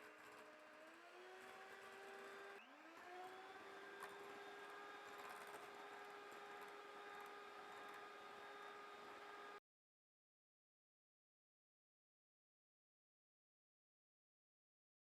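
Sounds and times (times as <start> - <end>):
small electric motor whirring: 0.0 - 9.6.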